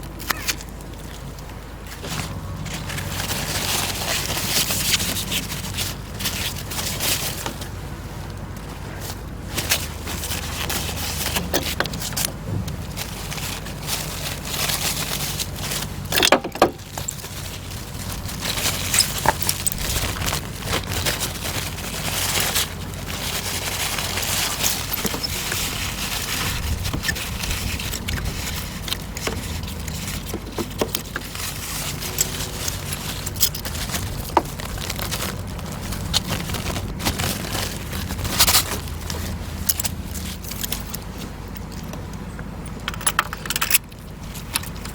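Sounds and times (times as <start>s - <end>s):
metal tools clinking and scraping: 9.6s - 44.9s.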